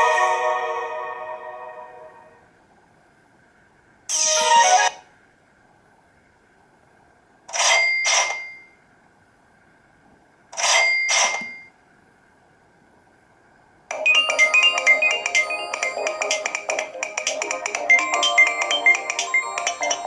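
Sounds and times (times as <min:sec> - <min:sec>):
bell-like phone alert chime: 0:13.9 - 0:20.0.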